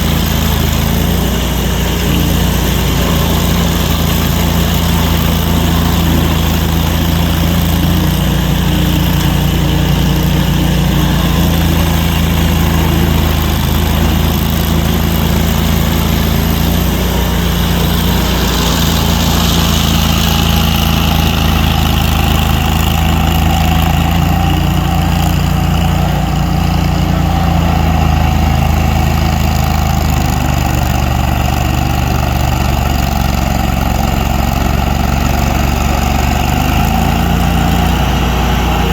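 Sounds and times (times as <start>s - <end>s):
heavy engine idling: 0.0s - 38.9s.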